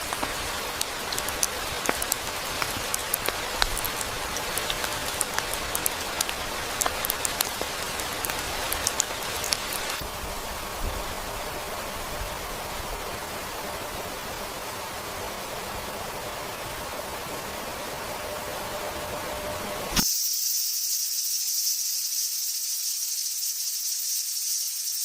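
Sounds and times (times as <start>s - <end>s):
raindrop ticks: 0.0s - 10.0s
rain hissing: 0.0s - 25.0s.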